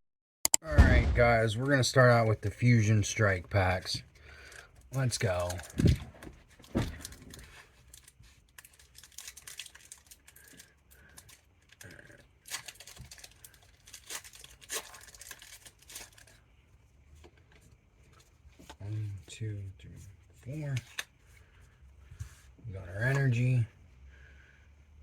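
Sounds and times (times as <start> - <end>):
foil wrapper tearing and crinkling: 6.6 - 16.4.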